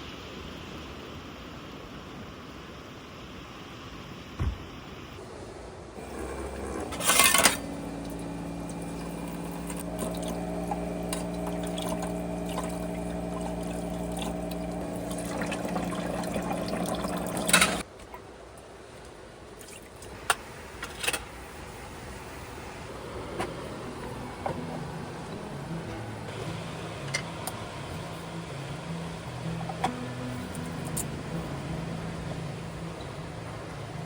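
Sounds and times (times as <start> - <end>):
water pouring: 6.0 - 17.8
electric water pump humming: 6.0 - 17.9, 20.0 - 34.0.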